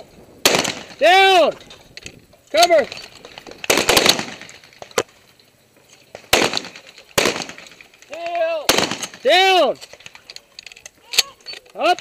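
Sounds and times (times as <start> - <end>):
shotgun shots echoing: 0.4 - 1.3, 3.6 - 4.6, 6.3 - 10.1.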